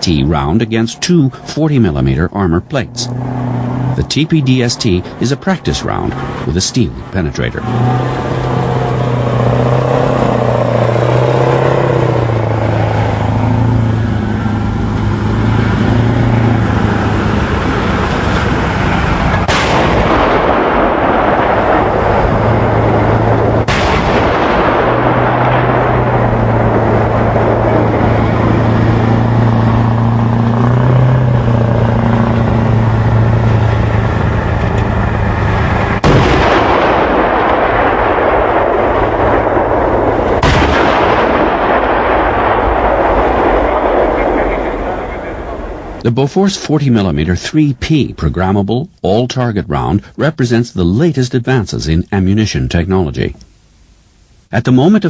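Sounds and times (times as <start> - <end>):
tracked vehicle engine and tracks: 0.0 - 55.0
gun firing bangs: 19.4 - 27.6, 36.0 - 45.1.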